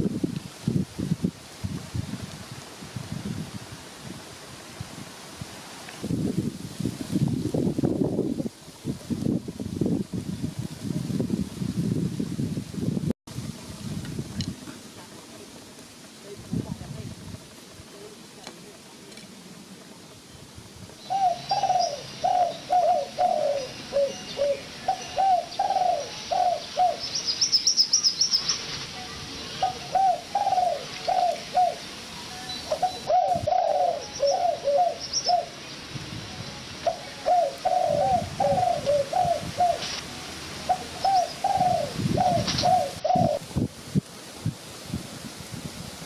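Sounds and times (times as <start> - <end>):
thin high chirping: 21.0 - 37.9.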